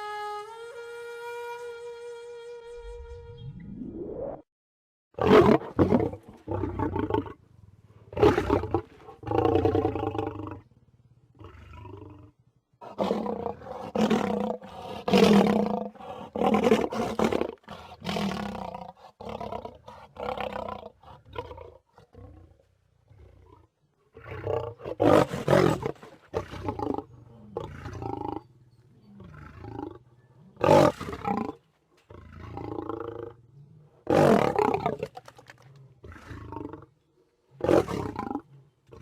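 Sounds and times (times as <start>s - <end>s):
lion growling and snarling: 8.0s - 39.0s.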